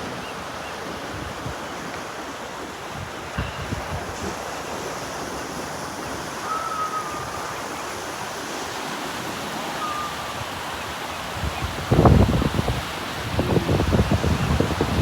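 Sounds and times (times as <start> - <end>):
ocean surf washing ashore: 0.0 - 15.0
thin whistle-like notes: 6.4 - 8.1, 9.8 - 10.6.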